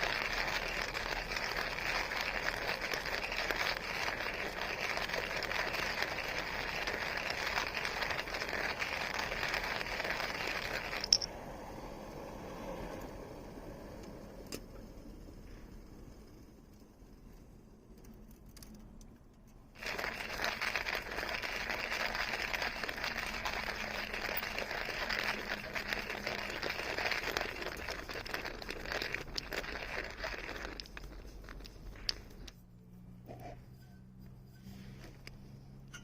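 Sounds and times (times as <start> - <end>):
coffee grinder grinding beans: 0.0 - 11.3, 19.8 - 32.6.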